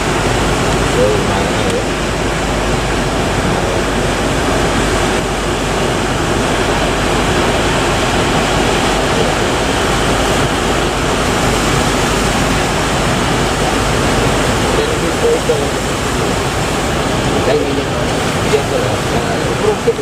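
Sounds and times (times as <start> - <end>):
heavy surf breaking: 0.0 - 20.0.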